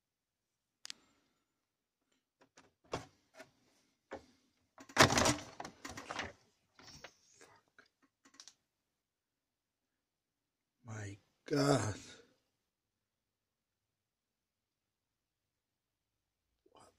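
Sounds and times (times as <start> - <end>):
objects clattering: 4.1 - 7.2
hard objects clicking and knocking: 4.8 - 6.4.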